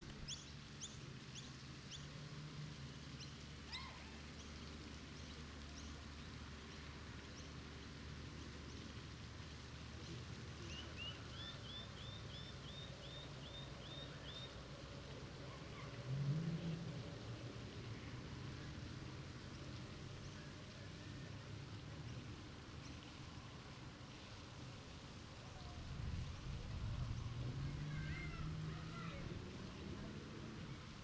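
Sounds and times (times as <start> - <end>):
small birds chirping: 0.1 - 2.2, 10.6 - 14.6.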